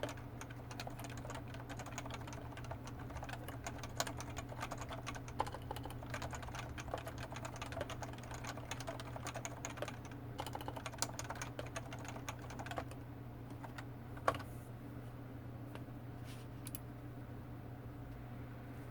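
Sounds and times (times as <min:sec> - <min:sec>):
soft keyboard keystrokes: 0:00.0 - 0:14.5.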